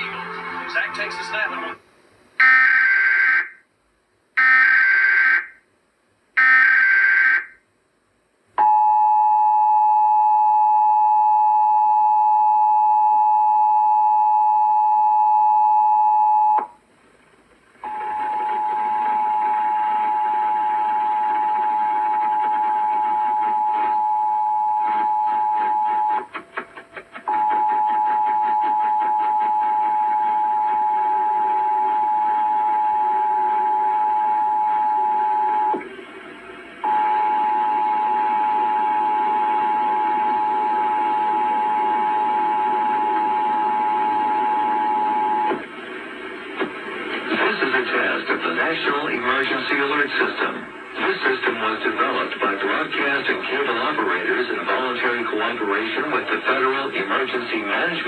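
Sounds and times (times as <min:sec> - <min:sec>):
two-tone attention signal: 0:27.3 - 0:35.8, 0:36.8 - 0:45.6.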